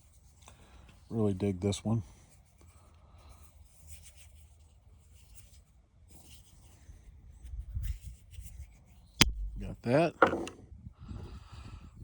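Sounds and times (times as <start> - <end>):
low bumps: 9.2 - 10.6.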